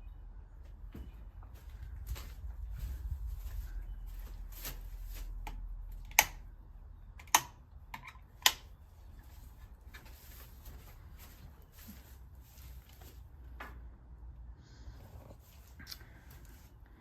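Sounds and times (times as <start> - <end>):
low rumble: 0.0 - 6.0
sharp clicks: 7.2 - 8.7.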